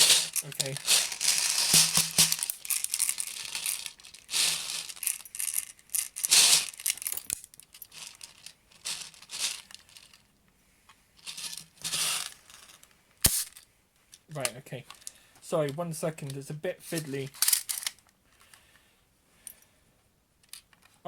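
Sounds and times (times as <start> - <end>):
plastic bag crinkling: 0.0 - 10.2.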